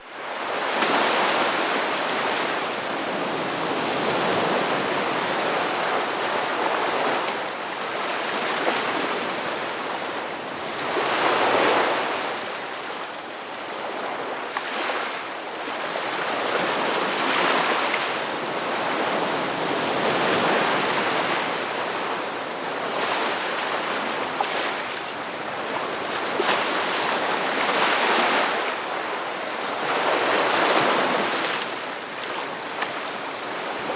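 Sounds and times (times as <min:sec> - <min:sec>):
ocean waves breaking: 0:15.8 - 0:33.9.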